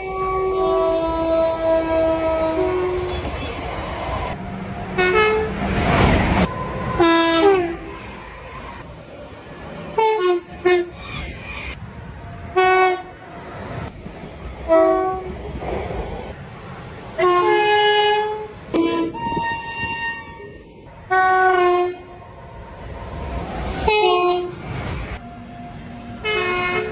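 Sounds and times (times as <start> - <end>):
train horn blasts: 0.0 - 3.3, 4.3 - 8.1, 10.0 - 11.0, 12.4 - 13.3, 14.7 - 15.4, 17.2 - 22.2, 23.8 - 26.9
running train: 0.0 - 26.9.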